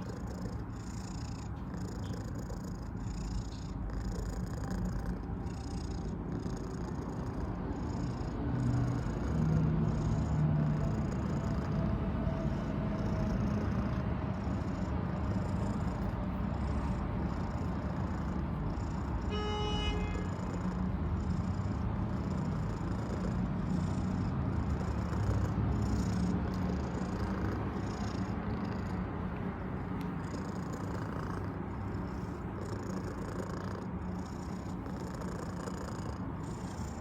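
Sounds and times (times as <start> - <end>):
cat purring: 0.0 - 37.0.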